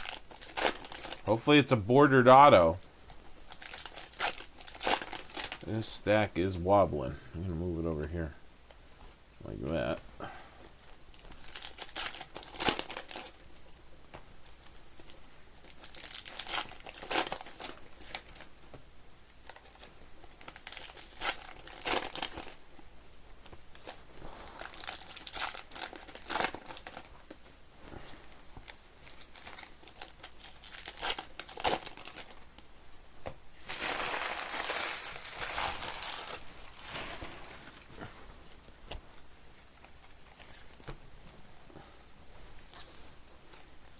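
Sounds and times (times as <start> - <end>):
card pack wrappers tearing and crinkling: 0.0 - 5.9, 11.1 - 13.4, 15.0 - 18.5, 19.4 - 22.6, 23.7 - 27.4, 28.6 - 32.4, 33.6 - 37.8.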